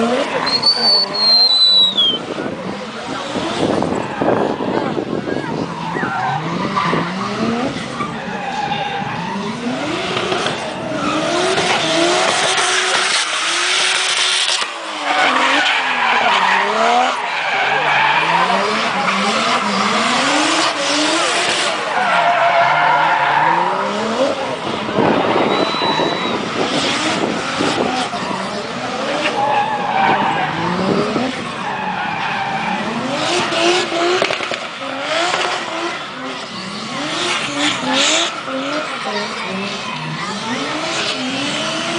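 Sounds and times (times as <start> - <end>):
tyres screeching: 0.0 - 2.2
car engines revving: 0.0 - 41.9.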